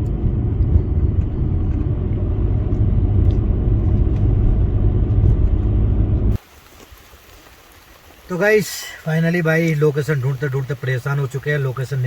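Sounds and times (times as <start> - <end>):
car engine and tyres rumbling: 0.0 - 6.4.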